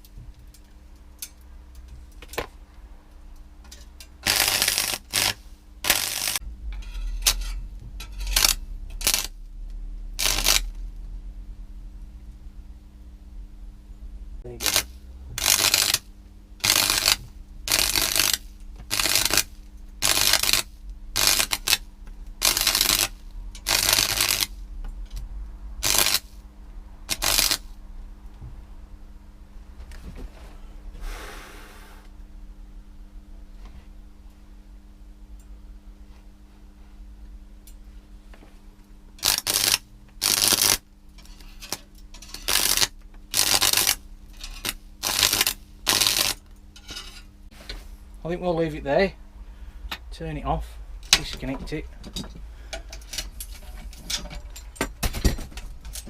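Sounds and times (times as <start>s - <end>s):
low electrical hum: 0.0s - 56.0s
welding arc crackling: 4.2s - 9.5s, 10.1s - 10.8s, 14.5s - 25.2s, 25.8s - 26.4s, 27.0s - 27.8s, 39.2s - 47.1s.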